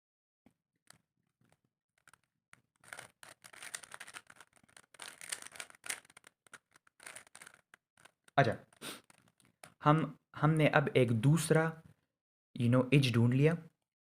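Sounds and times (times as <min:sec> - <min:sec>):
plastic cube clicking and scraping: 0:00.9 - 0:09.8.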